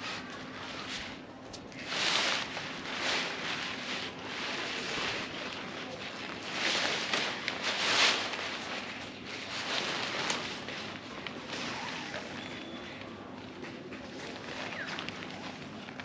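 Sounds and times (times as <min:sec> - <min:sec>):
tent fabric rustling: 0:00.0 - 0:12.7.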